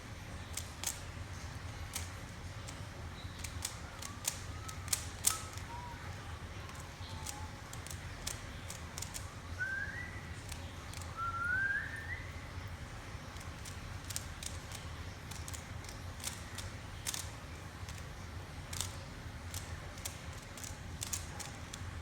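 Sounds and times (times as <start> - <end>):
plastic puzzle cube clicking: 0.4 - 11.8, 13.2 - 22.0
person whistling a tune: 9.6 - 10.2, 11.2 - 12.3.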